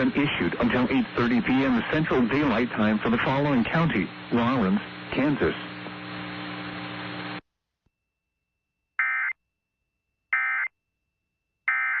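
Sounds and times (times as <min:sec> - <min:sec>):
hum and hiss: 0:00.0 - 0:07.4.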